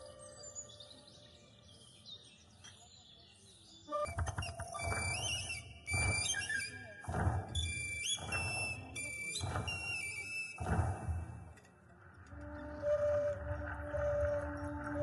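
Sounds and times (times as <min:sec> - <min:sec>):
high chirping whistle-like tones: 0:03.8 - 0:11.6, 0:12.3 - 0:15.0.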